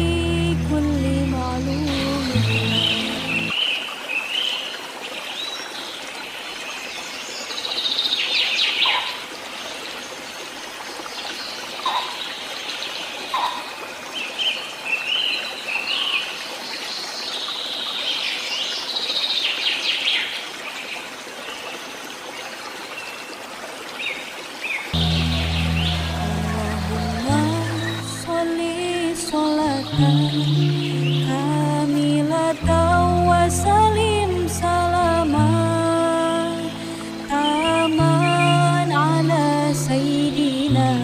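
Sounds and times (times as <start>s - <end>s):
trickle of running water: 0.2s - 41.0s
birds chirping and warbling: 1.4s - 3.8s, 7.0s - 9.3s, 11.8s - 16.2s, 24.1s - 28.3s.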